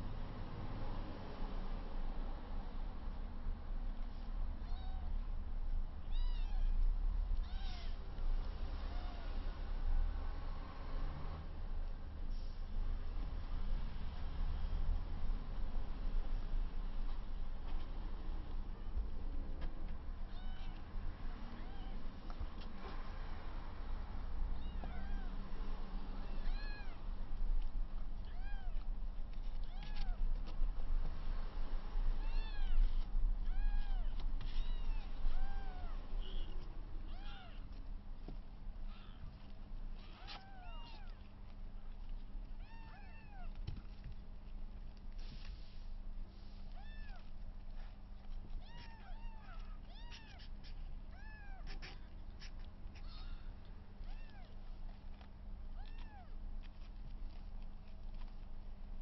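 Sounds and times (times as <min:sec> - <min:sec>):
kitten mewing: 0:32.2 - 0:37.7, 0:40.0 - 0:41.2, 0:48.6 - 0:54.6.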